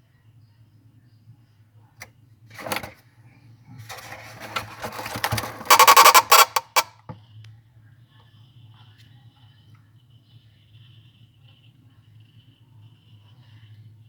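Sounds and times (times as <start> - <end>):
refrigerator hum: 1.9 - 6.9
fan rattling against ice: 2.5 - 3.0, 3.8 - 6.9.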